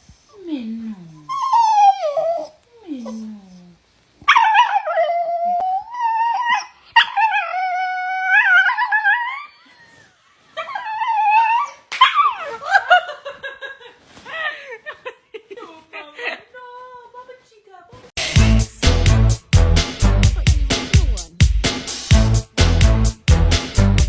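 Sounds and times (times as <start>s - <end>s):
dog howling and whining: 1.3s - 2.6s, 4.3s - 12.4s.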